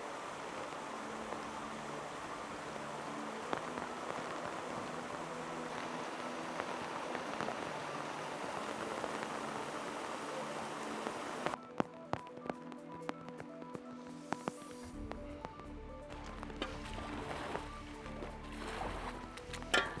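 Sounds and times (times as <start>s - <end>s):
heavy rain falling: 0.0s - 11.6s
raindrop ticks: 1.3s - 17.6s.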